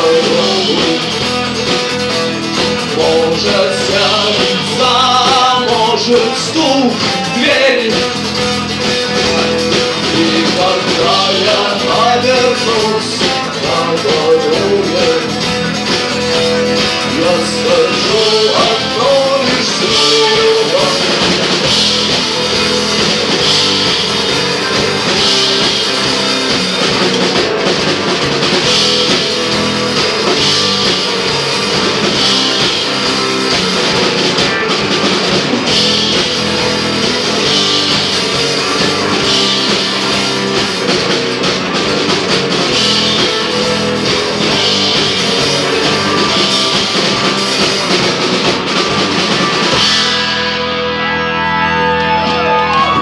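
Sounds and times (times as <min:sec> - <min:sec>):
live rock band playing: 0:00.0 - 0:53.0.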